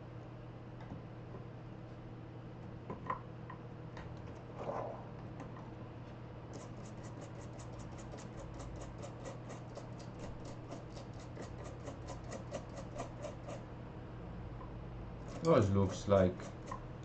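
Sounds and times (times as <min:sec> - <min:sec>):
brush scrubbing circuit board: 0:15.3 - 0:16.8.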